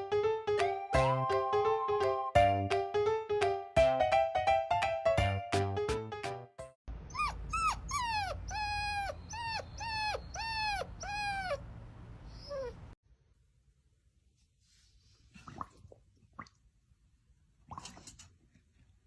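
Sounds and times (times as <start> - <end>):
music: 0.0 - 6.8
dog whining: 7.1 - 11.7, 12.3 - 13.0.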